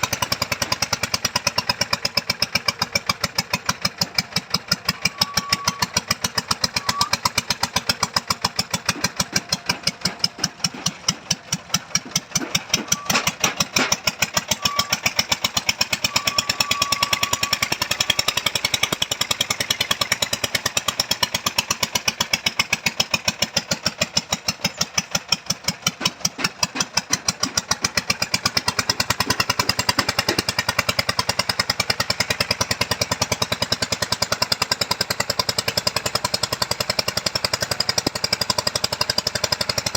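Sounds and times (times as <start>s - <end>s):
digging machine pounding: 0.0s - 39.9s
sharp knocks: 8.8s - 14.2s.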